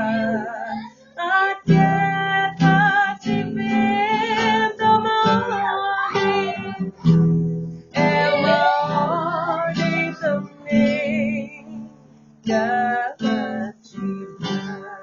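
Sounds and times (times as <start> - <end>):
person singing a hymn: 0.0 - 7.3, 7.9 - 15.0
acoustic guitar strumming: 0.0 - 15.0.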